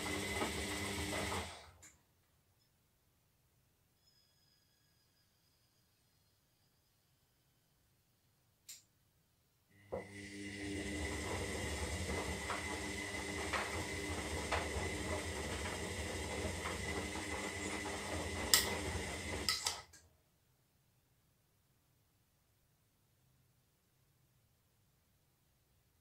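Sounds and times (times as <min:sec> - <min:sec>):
washing machine drum motor humming: 0:00.0 - 0:01.8, 0:09.9 - 0:19.9.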